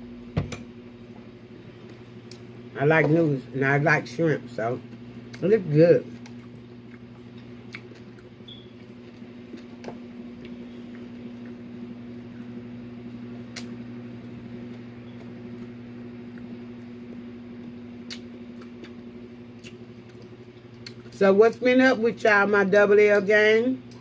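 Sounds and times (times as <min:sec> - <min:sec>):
low electrical hum: 0:00.0 - 0:24.0
chewing and mouth clicks: 0:06.1 - 0:12.5, 0:13.5 - 0:13.8, 0:18.0 - 0:21.1.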